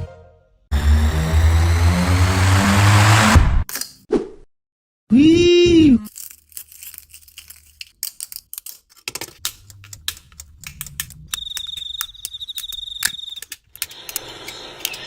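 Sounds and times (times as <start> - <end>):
small objects clicking and tapping: 6.1 - 15.0.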